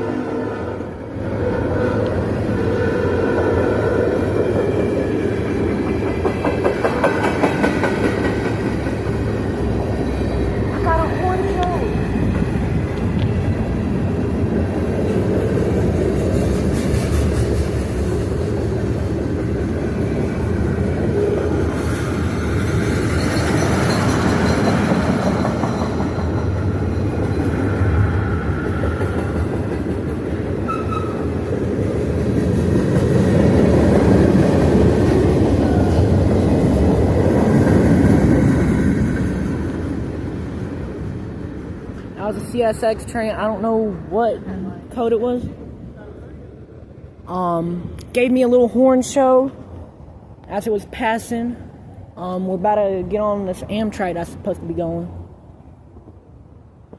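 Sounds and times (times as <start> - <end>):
freight train rumbling on rails: 0.0 - 56.9.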